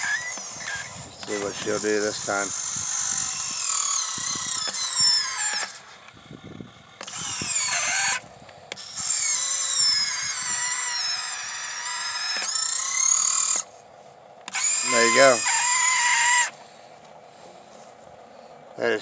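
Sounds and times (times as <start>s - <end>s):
small electric motors whining: 0.0s - 19.0s.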